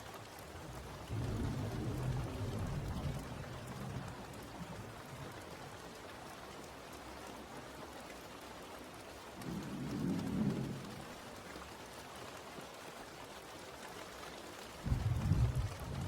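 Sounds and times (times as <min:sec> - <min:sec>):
steady rain falling: 0:00.0 - 0:16.0
low rumble of thunder: 0:00.9 - 0:05.4, 0:09.4 - 0:11.2, 0:14.8 - 0:16.0.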